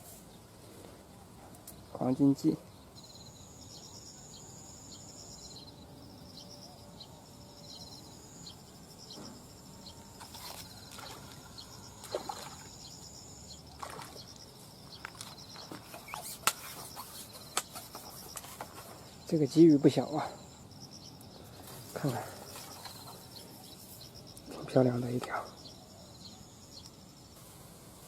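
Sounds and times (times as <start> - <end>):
insects trilling: 0.3 - 28.0
water splashing and trickling: 10.2 - 16.6.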